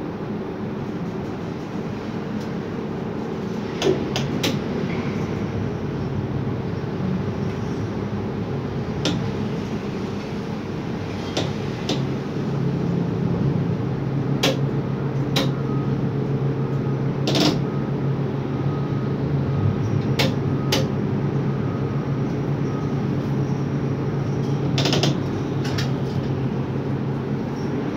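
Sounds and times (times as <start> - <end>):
crane mechanical hum: 0.0 - 27.9
sharp clicks and knocks: 9.0 - 9.3, 14.4 - 14.6, 20.0 - 20.9, 24.4 - 26.4.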